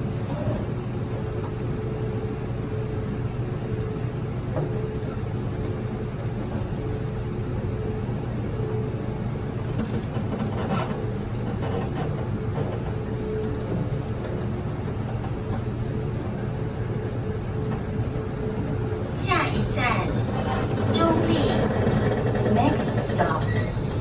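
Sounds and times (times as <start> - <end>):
wheels rumbling on rail: 0.0 - 24.0
faint steady hum: 15.6 - 21.9.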